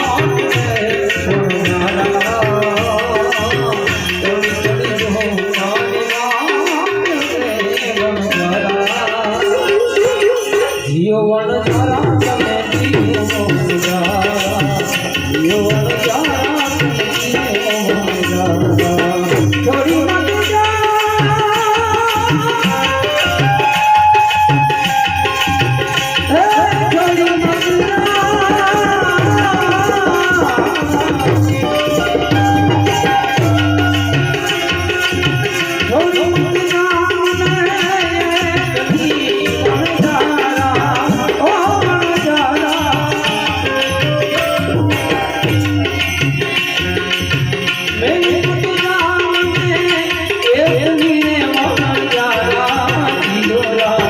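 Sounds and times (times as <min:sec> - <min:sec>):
tabla rhythm: 0:00.0 - 0:54.0
wavering melodic line: 0:22.6 - 0:36.6.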